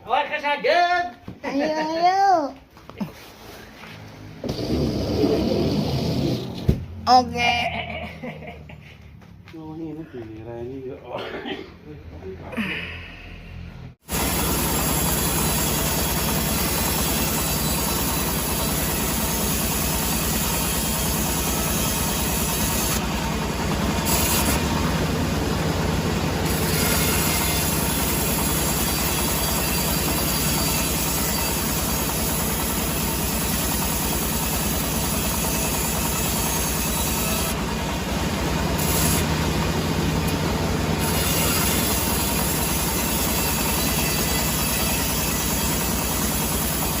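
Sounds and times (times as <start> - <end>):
sawmill machinery running: 4.4 - 7.0, 14.0 - 47.0.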